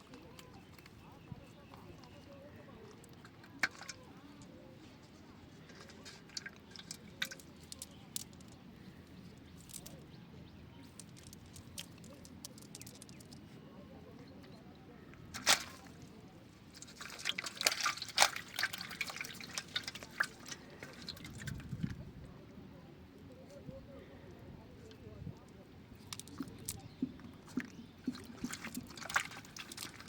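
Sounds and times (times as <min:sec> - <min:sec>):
water dripping and splashing: 0:05.7 - 0:08.6, 0:15.3 - 0:16.1, 0:16.7 - 0:21.9, 0:26.0 - 0:30.0.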